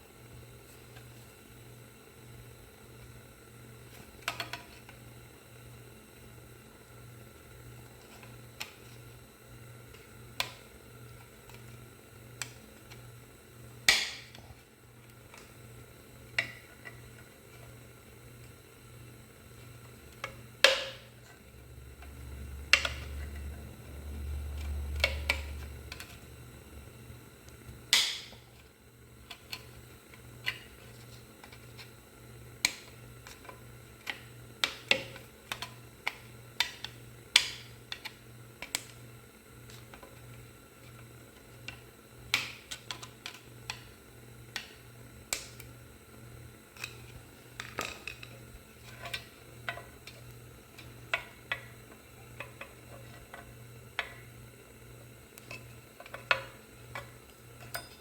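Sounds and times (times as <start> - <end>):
faint pulsing hum: 0.0 - 42.3.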